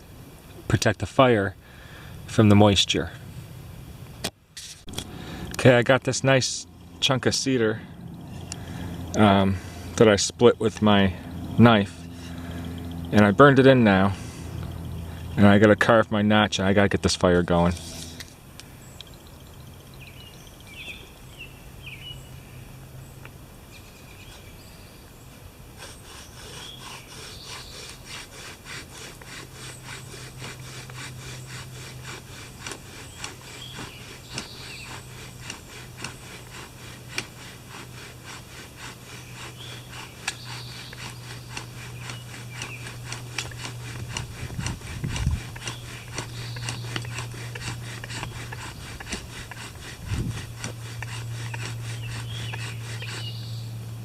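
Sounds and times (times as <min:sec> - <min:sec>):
bow drill rubbing wood: 0:04.6 - 0:18.7, 0:25.7 - 0:53.8.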